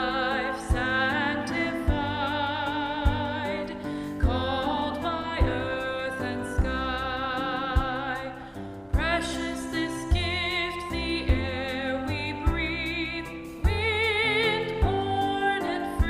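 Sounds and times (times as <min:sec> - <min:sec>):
hymn sung with vibrato: 0:00.0 - 0:06.7.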